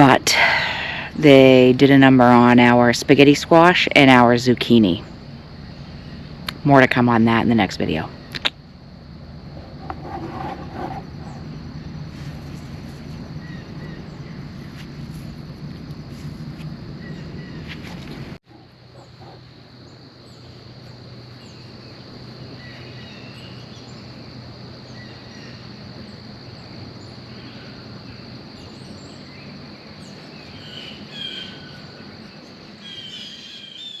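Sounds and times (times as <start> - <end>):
crickets droning: 0.0 - 34.0
birds chirping: 0.1 - 24.1.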